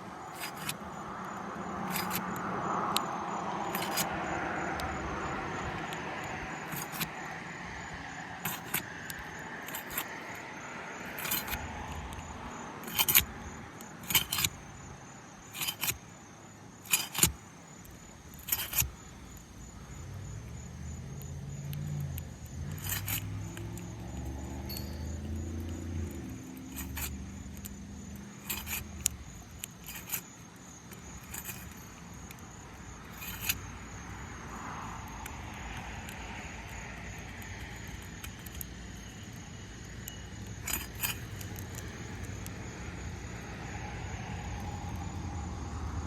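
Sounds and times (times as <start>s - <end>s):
passing vehicle: 0.0s - 16.4s, 18.4s - 46.0s
metal tool tapping shingles: 0.3s - 1.1s, 1.8s - 5.0s, 5.6s - 7.4s, 8.4s - 14.8s, 15.4s - 16.0s, 16.8s - 19.5s, 21.1s - 39.4s, 40.0s - 42.6s.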